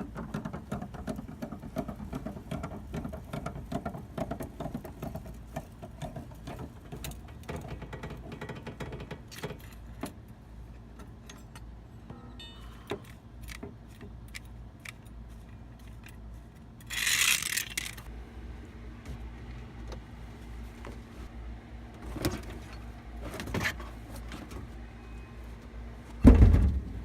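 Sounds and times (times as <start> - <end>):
metal tools clinking and rattling: 10.9 - 14.0.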